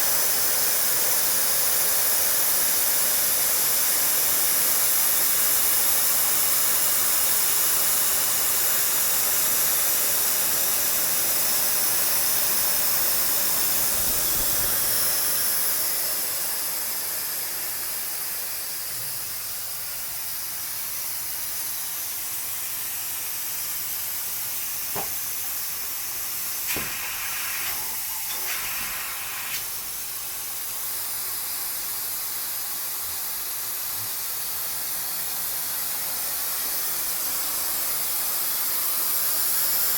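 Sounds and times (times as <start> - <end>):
cnc machine cutting metal: 27.5 - 32.3.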